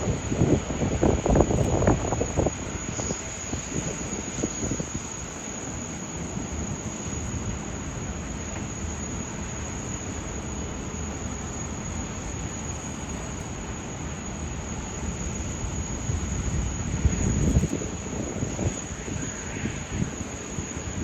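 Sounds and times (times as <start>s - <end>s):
wind buffeting microphone: 0.0s - 7.7s, 15.6s - 21.0s
jet engine rumble: 0.0s - 21.0s.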